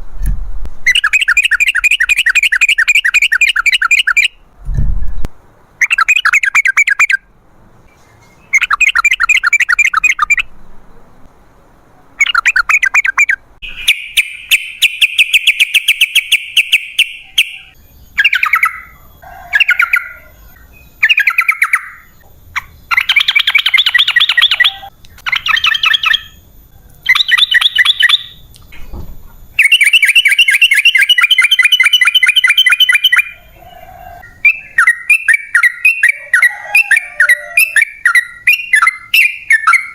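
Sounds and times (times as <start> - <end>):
bird song with bubbly trills: 0.8 - 4.4, 12.2 - 26.4, 27.0 - 28.4, 29.6 - 33.4, 34.2 - 39.9.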